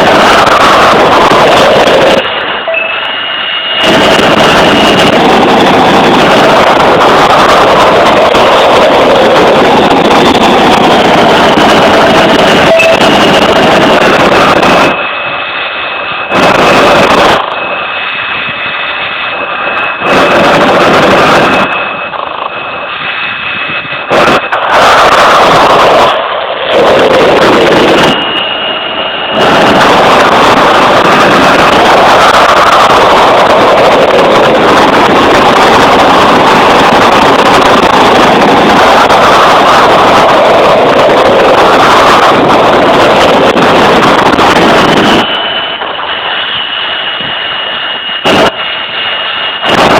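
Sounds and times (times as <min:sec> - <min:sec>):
jet engine roar: 0:00.0 - 0:49.9
wind buffeting microphone: 0:00.0 - 0:49.9.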